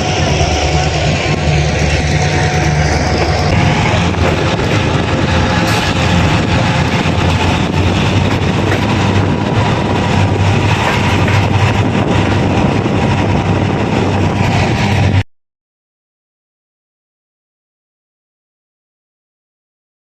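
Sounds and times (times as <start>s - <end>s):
train running along track: 0.0s - 15.2s.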